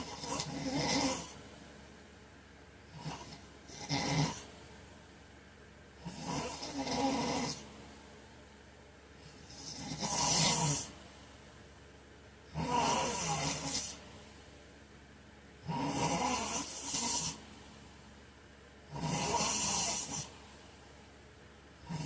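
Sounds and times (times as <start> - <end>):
man snoring: 0.0 - 1.4, 2.9 - 4.5, 6.0 - 7.7, 9.3 - 11.0, 12.5 - 14.0, 15.6 - 17.4, 18.9 - 20.4
quiet breathing: 0.0 - 1.6, 15.7 - 18.2.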